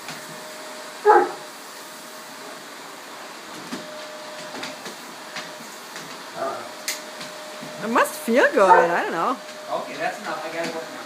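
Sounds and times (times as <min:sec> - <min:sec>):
vacuum cleaner humming: 0:00.0 - 0:11.0
dog barking: 0:01.0 - 0:01.4, 0:08.6 - 0:09.1.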